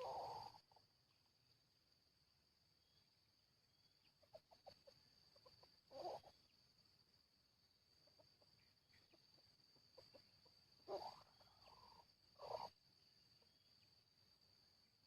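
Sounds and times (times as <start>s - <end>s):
junglefowl clucking: 0.0s - 0.9s, 4.0s - 6.6s, 8.0s - 12.8s
faint high-pitched whine: 0.0s - 15.0s.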